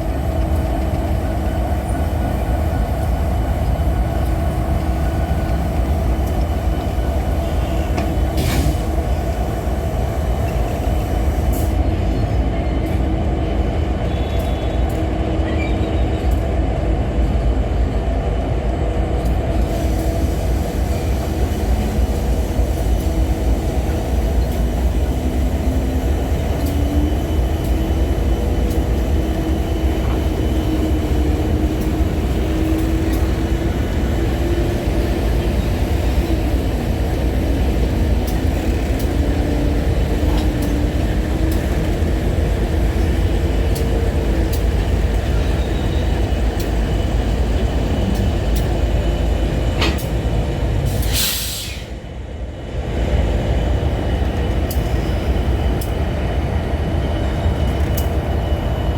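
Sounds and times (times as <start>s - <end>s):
sharp clicks of train wheels: 0.0s - 11.8s, 16.2s - 16.6s, 19.1s - 52.1s, 52.9s - 58.4s
freight train rumbling past: 0.0s - 58.9s
burst of hiss: 50.9s - 51.9s.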